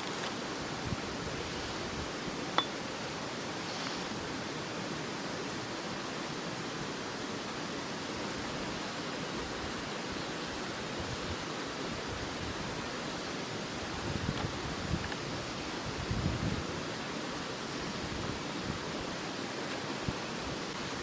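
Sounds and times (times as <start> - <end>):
river water rushing: 0.0 - 15.9, 16.6 - 21.0.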